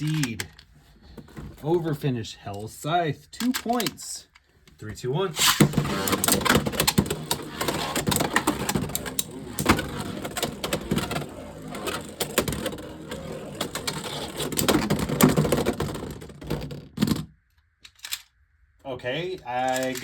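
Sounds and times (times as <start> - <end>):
spinning tops rattling and grinding: 5.4 - 16.3, 19.6 - 20.0.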